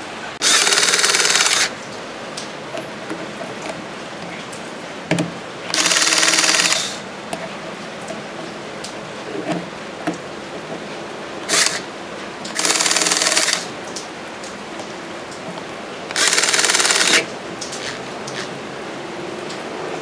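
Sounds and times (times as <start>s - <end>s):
rapid mechanical rattle: 0.4s - 1.8s, 5.7s - 7.0s, 11.5s - 11.8s, 12.6s - 13.7s, 16.1s - 18.5s.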